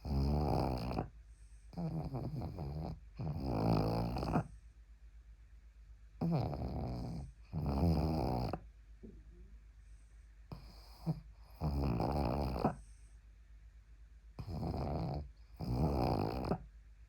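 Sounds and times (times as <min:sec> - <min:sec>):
dog snoring: 0:00.0 - 0:04.5, 0:06.2 - 0:08.7, 0:10.5 - 0:13.0, 0:14.4 - 0:16.7.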